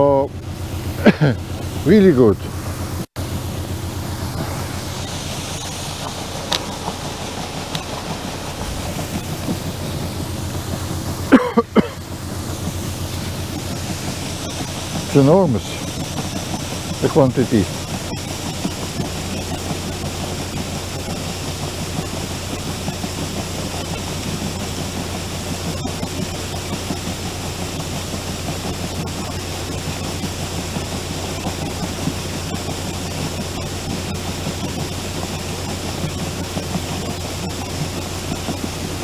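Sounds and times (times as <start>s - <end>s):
low motor hum: 0.0s - 39.0s
falling grain hiss: 3.3s - 17.8s.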